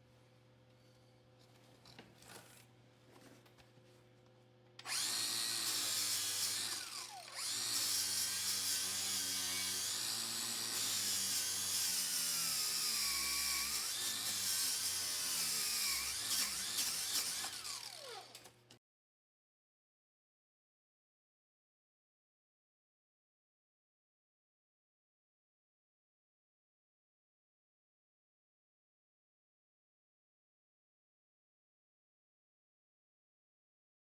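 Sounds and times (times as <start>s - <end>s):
angle grinder on steel: 4.8s - 18.5s.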